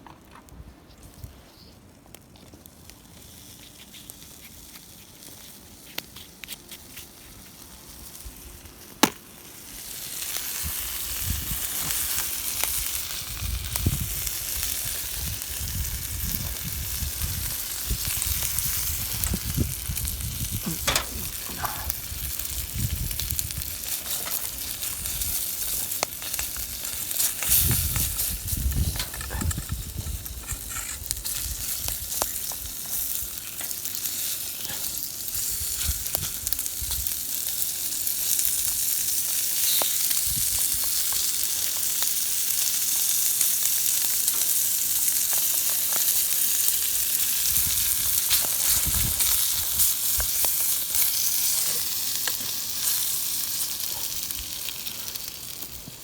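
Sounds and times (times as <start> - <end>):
food sizzling over campfire: 2.1 - 56.0
crackling pops: 8.8 - 9.5, 11.2 - 35.0, 39.4 - 56.0.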